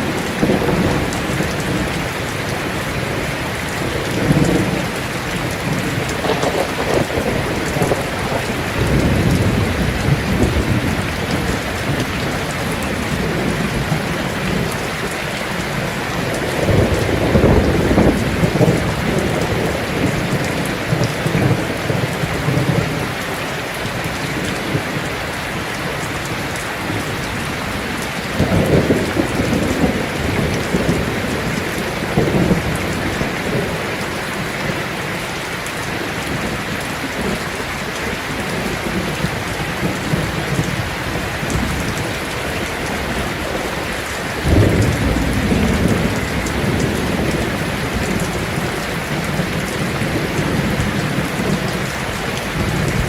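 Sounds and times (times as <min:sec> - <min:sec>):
thunder rolling: 0:00.0 - 0:23.1, 0:26.9 - 0:34.7, 0:38.4 - 0:53.0
heavy rain on a tin roof: 0:00.0 - 0:53.0.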